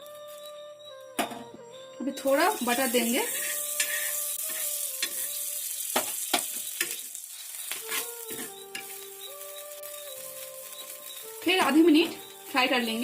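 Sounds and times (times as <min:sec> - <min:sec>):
butter sizzling in a pan: 0:02.2 - 0:13.0
utensil clicking against pan: 0:07.7 - 0:09.6.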